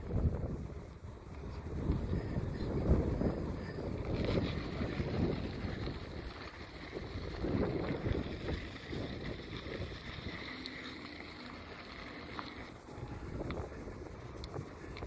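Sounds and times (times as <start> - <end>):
wind buffeting microphone: 0.0 - 15.0
faint ticks: 10.2 - 15.0.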